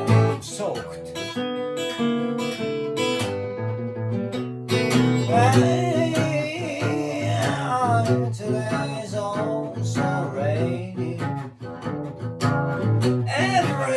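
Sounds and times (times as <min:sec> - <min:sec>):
fingerpicked acoustic guitar blues: 0:00.0 - 0:13.9
wordless wavering vocal: 0:05.2 - 0:08.2, 0:13.3 - 0:13.9.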